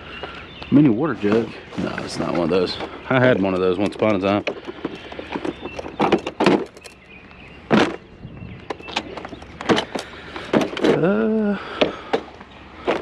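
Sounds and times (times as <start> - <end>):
junk knocking and clattering: 1.8 - 7.1, 7.7 - 11.1.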